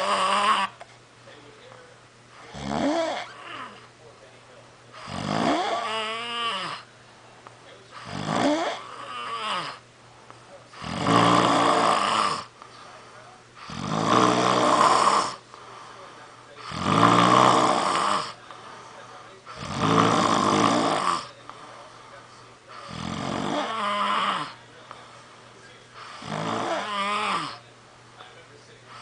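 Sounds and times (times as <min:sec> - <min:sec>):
person snoring: 0:00.0 - 0:00.8, 0:02.4 - 0:03.8, 0:05.0 - 0:06.9, 0:08.0 - 0:09.8, 0:10.7 - 0:12.5, 0:13.6 - 0:15.4, 0:16.6 - 0:18.4, 0:19.5 - 0:21.4, 0:22.7 - 0:24.6, 0:26.0 - 0:27.6.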